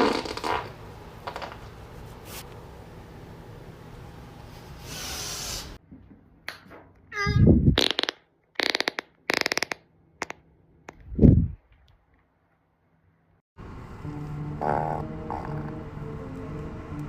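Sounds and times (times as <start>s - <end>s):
human farts: 0.0s - 0.8s, 7.8s - 9.8s, 14.6s - 15.8s.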